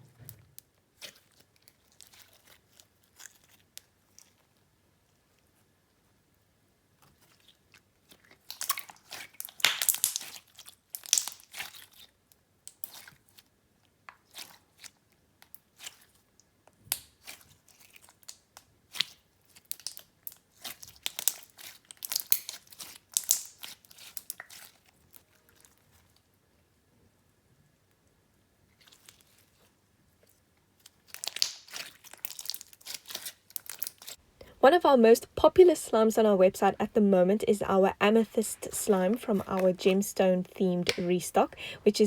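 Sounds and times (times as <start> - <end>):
slime crackling and popping: 8.1 - 13.2, 16.8 - 25.8, 30.8 - 34.2.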